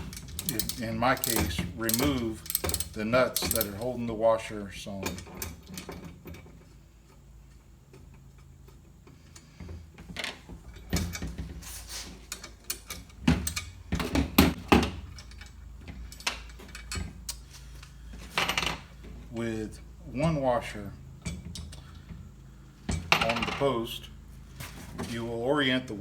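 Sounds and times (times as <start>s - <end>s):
metal nuts and washers clinking: 0.0s - 4.2s, 10.2s - 17.5s, 22.9s - 24.0s
socket ratchet clicking: 0.2s - 3.8s.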